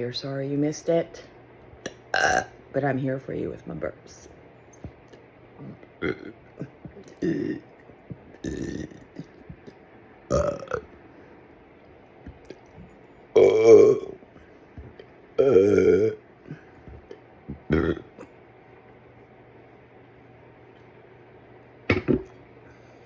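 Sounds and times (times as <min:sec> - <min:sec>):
person burping: 0:02.1 - 0:02.5, 0:05.6 - 0:07.7, 0:08.4 - 0:09.4, 0:10.3 - 0:10.9, 0:13.3 - 0:14.2, 0:15.4 - 0:16.7, 0:17.5 - 0:18.4.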